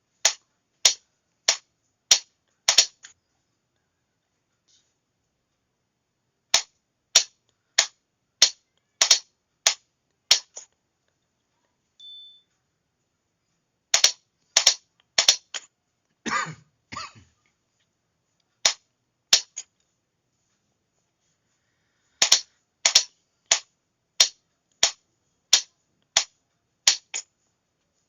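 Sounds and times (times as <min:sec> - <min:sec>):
short high beep: 0:12.0 - 0:12.5.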